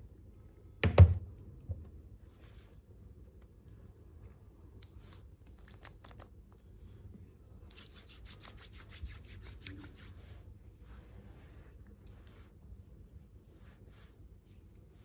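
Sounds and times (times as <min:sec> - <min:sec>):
scratching and rubbing on surface: 0:07.7 - 0:15.0.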